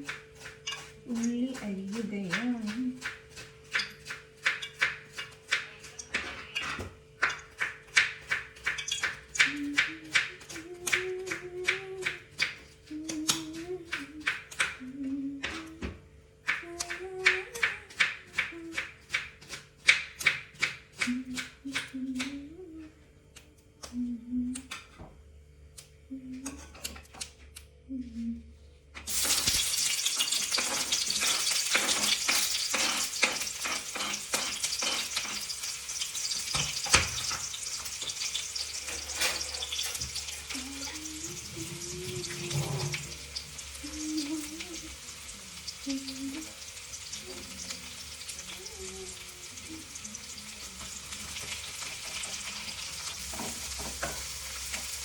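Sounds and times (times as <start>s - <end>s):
frying sizzle: 0.0s - 10.3s, 29.1s - 55.0s
knife chopping on cutting board: 0.0s - 12.6s, 16.4s - 22.3s.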